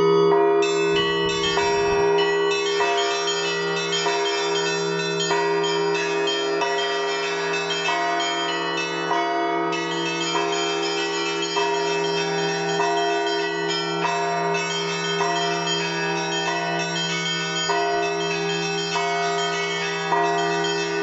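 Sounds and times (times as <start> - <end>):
deep bell humming: 0.0 - 5.0
higher bells struck: 0.0 - 21.0.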